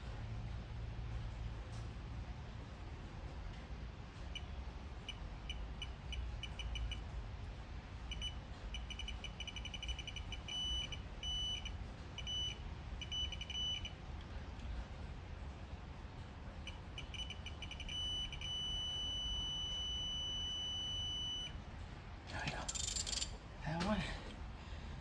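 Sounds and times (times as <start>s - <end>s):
long held beep tone: 17.0s - 21.5s.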